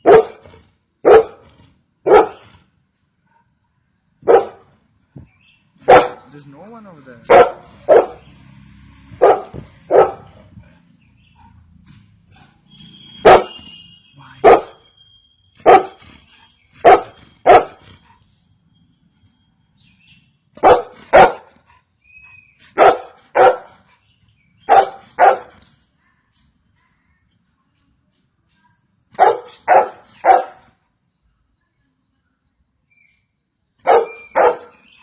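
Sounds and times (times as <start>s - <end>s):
dog barking: 0.0s - 2.5s, 4.2s - 4.7s, 5.8s - 6.3s, 7.2s - 8.3s, 9.2s - 10.5s, 13.2s - 13.7s, 14.4s - 14.8s, 15.6s - 16.0s, 16.8s - 17.8s, 20.6s - 21.6s, 22.7s - 23.8s, 24.6s - 25.6s, 29.1s - 30.8s, 33.8s - 35.0s.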